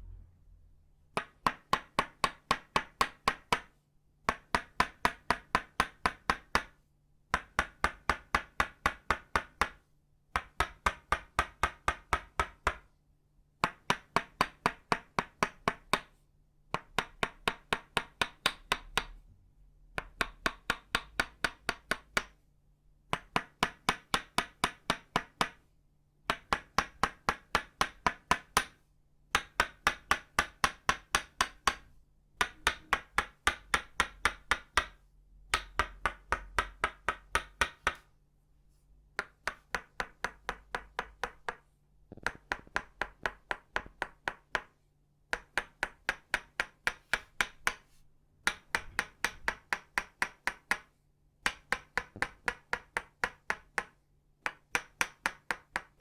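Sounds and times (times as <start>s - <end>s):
wooden mallet tapping wooden peg: 26.3s - 38.1s, 39.2s - 56.0s.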